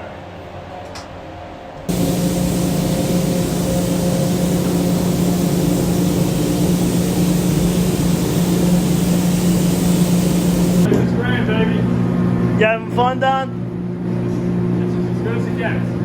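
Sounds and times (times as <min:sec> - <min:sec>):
hiss of moving air: 0:01.9 - 0:10.9
spray booth fans humming: 0:01.9 - 0:10.9.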